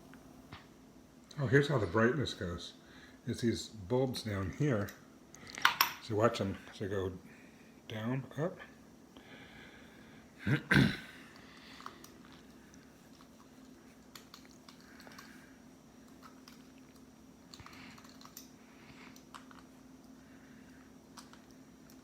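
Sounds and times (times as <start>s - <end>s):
faint steady hum: 0.0s - 22.0s
small parts clicking and tapping: 4.7s - 6.0s, 11.3s - 15.4s, 16.0s - 20.2s, 21.1s - 22.0s.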